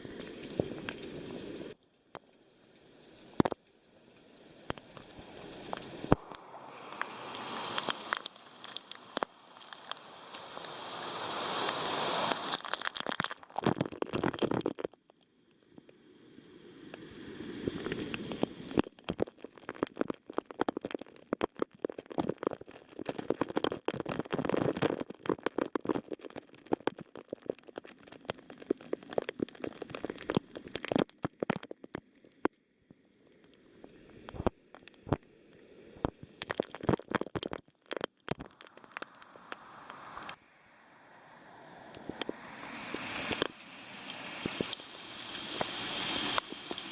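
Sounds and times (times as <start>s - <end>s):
sharp water drips: 0.0s - 15.2s, 16.9s - 32.5s, 41.9s - 46.9s
water splashing down small falls: 4.7s - 14.6s, 41.2s - 46.9s.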